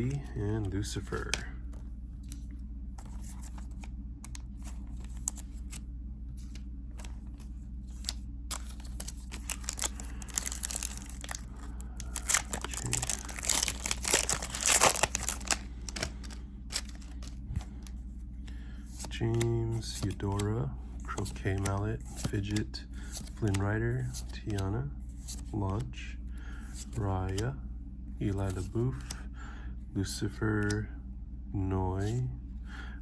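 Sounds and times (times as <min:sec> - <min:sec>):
low steady hum: 0:00.0 - 0:33.0
foil wrapper tearing and crinkling: 0:08.5 - 0:17.3.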